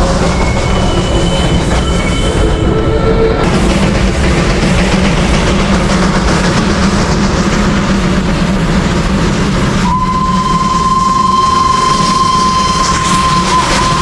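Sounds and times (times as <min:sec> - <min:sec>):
steam locomotive rumbling: 0:00.0 - 0:14.0
long train whistle: 0:09.8 - 0:14.0.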